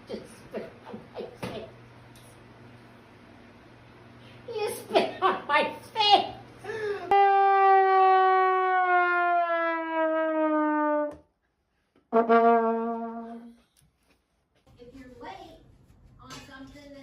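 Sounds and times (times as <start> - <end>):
brass horn note sliding down: 7.1 - 11.2, 12.1 - 13.6.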